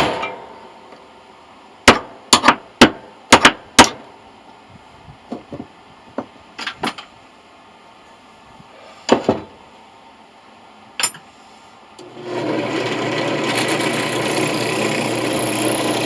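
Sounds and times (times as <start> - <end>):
electric drill grinding into metal: 12.0 - 16.0.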